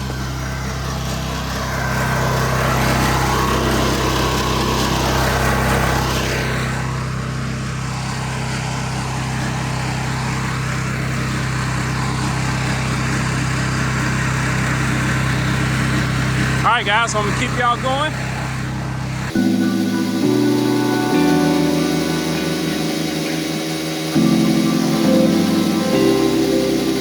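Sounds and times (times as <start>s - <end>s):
pressure washer engine running: 0.0s - 27.0s
hiss: 19.3s - 27.0s.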